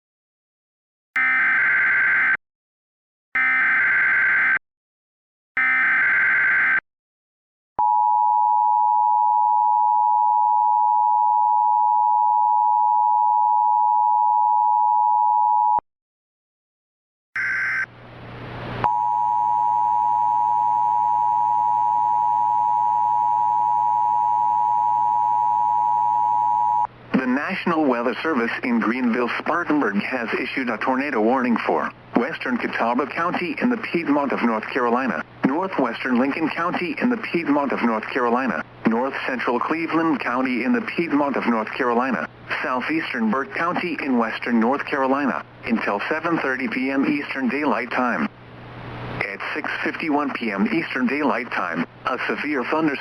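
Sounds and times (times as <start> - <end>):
background hiss and hum: 17.9 - 22.0, 26.9 - 53.0.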